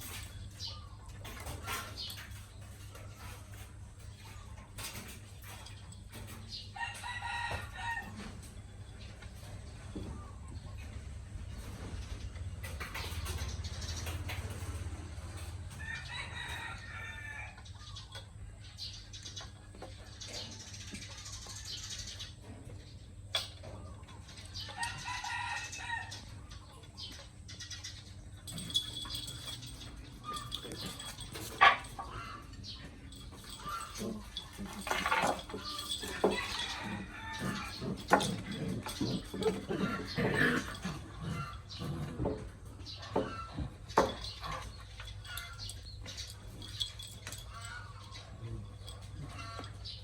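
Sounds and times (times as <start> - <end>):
rooster crowing: 15.8 - 17.6, 35.7 - 37.8
puppies yipping and crying: 24.5 - 50.0
puppies scuffling: 27.9 - 50.0
sharp knocks and clatters: 41.9 - 47.8.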